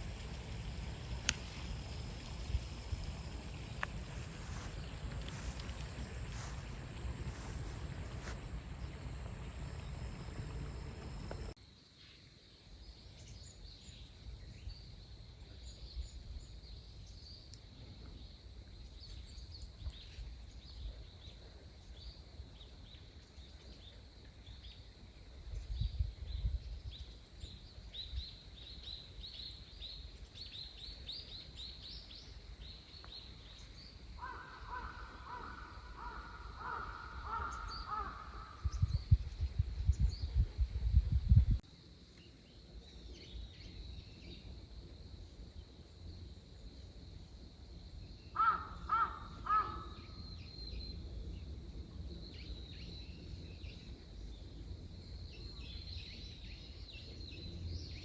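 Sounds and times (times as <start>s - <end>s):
low wind rumble: 0.0s - 11.6s, 34.8s - 41.6s
birds chirping: 3.4s - 11.6s.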